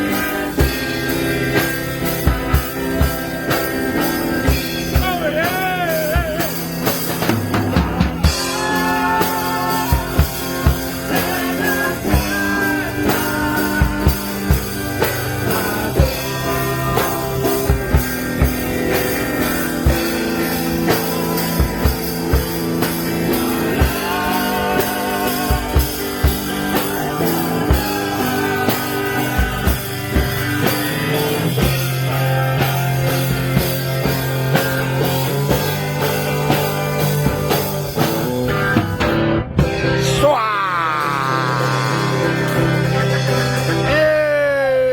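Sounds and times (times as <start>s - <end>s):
bass guitar: 0.0s - 44.9s
drum kit beat: 0.0s - 44.9s
electric guitar: 0.0s - 44.9s
person singing: 4.5s - 6.7s, 8.0s - 30.8s, 40.0s - 44.9s.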